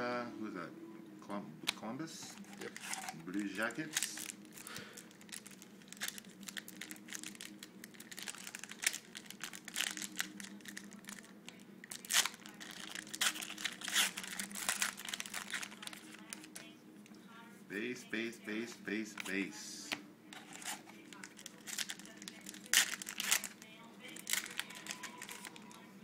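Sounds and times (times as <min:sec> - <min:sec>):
faint hum: 0:00.0 - 0:26.0
cards snapping and rustling: 0:01.7 - 0:11.3, 0:19.1 - 0:25.8
pack wrappers crinkling: 0:02.2 - 0:16.7, 0:20.3 - 0:25.9.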